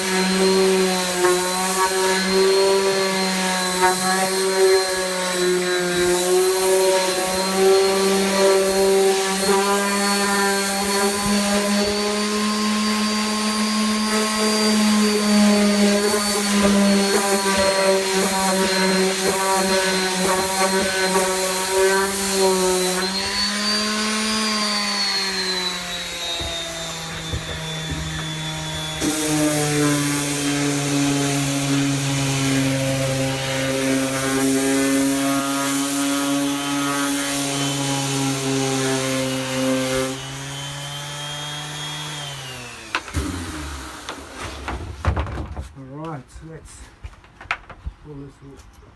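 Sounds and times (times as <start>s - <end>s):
power sander on wood: 0.0s - 45.4s.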